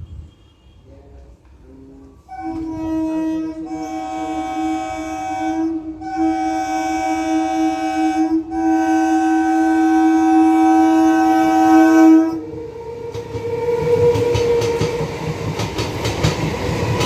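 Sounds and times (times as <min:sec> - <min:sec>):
train horn blast: 0:00.0 - 0:12.5.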